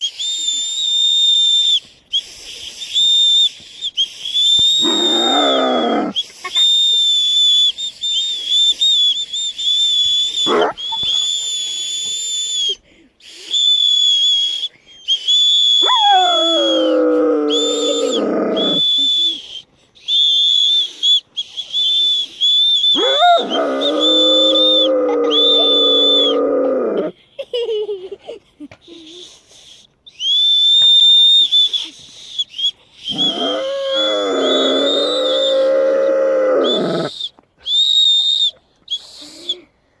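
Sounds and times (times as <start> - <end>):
children whistling high note: 0.0 - 26.5, 29.0 - 39.7
dog howling: 4.8 - 6.2, 10.4 - 11.1, 15.8 - 18.8, 23.0 - 27.1, 33.1 - 37.1.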